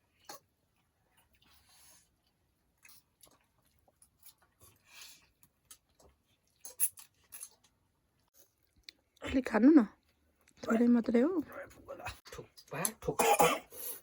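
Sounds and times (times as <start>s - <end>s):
person chewing food: 0.0s - 9.2s.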